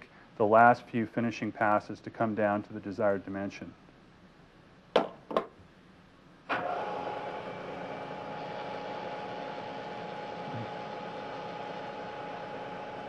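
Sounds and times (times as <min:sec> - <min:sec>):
milling machine motor running: 0:06.6 - 0:13.0.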